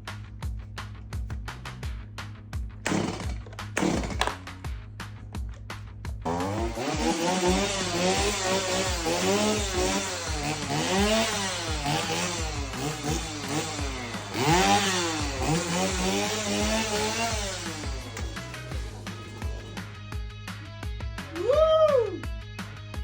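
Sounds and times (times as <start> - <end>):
chainsaw engine revving: 2.8 - 4.6, 6.2 - 20.0.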